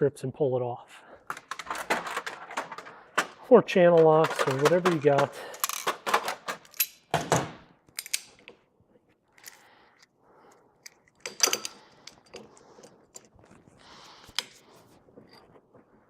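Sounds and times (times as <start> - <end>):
hand tools clanking on metal: 1.4 - 7.0, 11.2 - 12.8.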